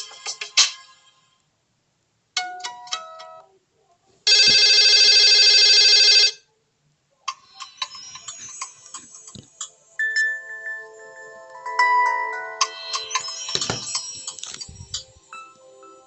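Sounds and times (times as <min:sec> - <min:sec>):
phone ringtone melody: 0:04.3 - 0:06.4, 0:10.0 - 0:16.0
rapidly pulsing phone ring: 0:04.3 - 0:06.4.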